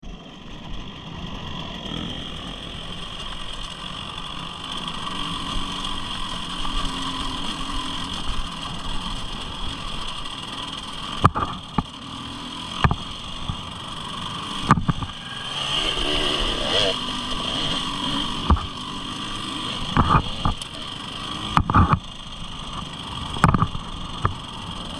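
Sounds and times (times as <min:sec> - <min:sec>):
vehicle engine running: 0:00.0 - 0:24.9
sharp knocks: 0:21.5 - 0:22.0.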